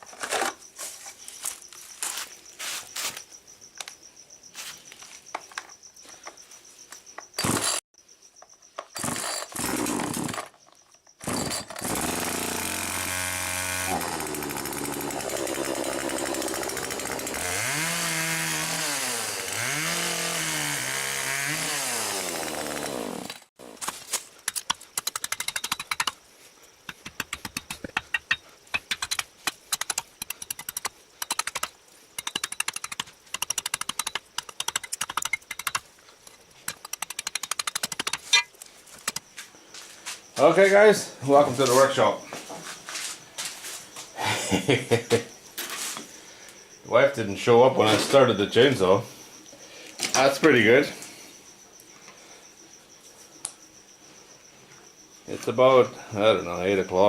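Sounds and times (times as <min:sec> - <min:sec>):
chainsaw starting and revving: 0:07.4 - 0:07.8, 0:09.0 - 0:10.5, 0:11.2 - 0:23.8.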